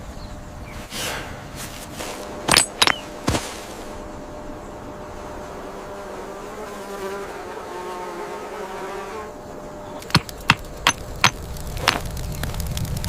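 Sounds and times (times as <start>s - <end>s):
insect buzzing: 2.0s - 13.0s
sharp knocks: 10.0s - 12.1s.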